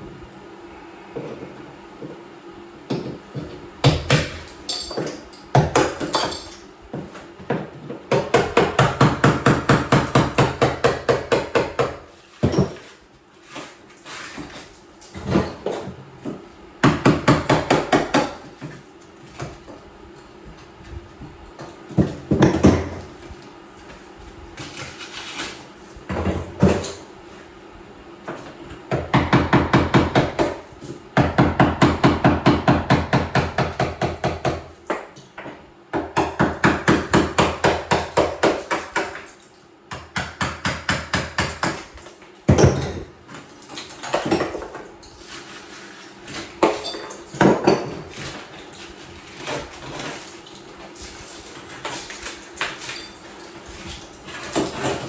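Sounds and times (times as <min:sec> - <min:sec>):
rapid hammer strikes on tile: 0:02.9 - 0:04.4, 0:05.0 - 0:06.4, 0:07.5 - 0:12.7, 0:16.8 - 0:18.4, 0:28.9 - 0:30.6, 0:31.2 - 0:35.0, 0:35.9 - 0:39.2, 0:39.9 - 0:41.9.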